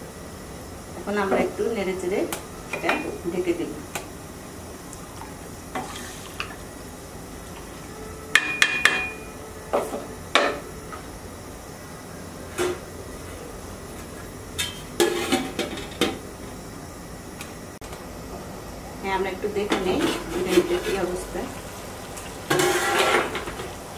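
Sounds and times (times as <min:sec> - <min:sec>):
spoon scraping in a pot: 0:22.5 - 0:23.5.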